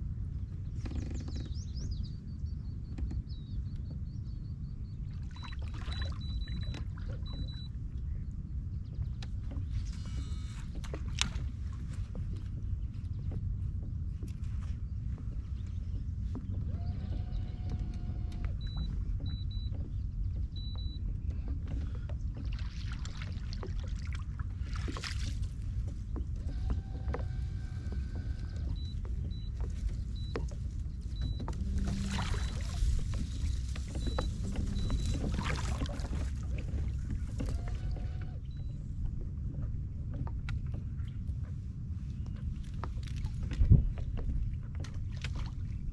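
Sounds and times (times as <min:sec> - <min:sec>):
low wind rumble on microphone: 0:00.0 - 0:45.9
water noise: 0:04.9 - 0:45.9
short high beeps: 0:34.0 - 0:35.4.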